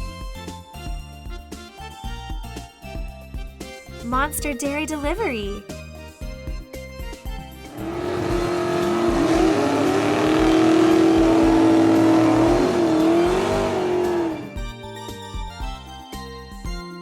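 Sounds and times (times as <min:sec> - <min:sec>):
children's music beat: 0:04.0 - 0:05.6
monster truck engine sound effect: 0:07.6 - 0:14.6.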